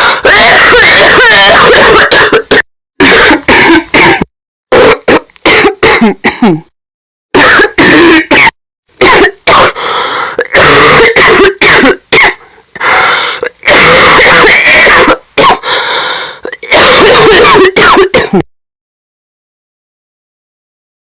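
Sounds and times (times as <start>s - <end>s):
person coughing distorted: 0.0s - 6.7s, 7.3s - 15.7s, 16.4s - 18.5s.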